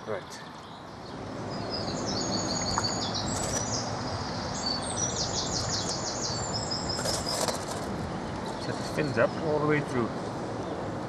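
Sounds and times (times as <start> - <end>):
bird trill: 0.0 - 7.8
songbirds singing: 0.0 - 11.0.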